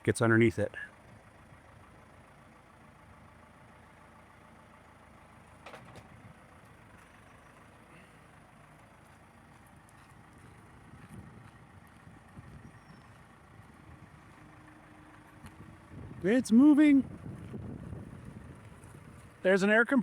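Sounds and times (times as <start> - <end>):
engine idling: 0.0 - 20.0
short clatter: 5.6 - 6.2.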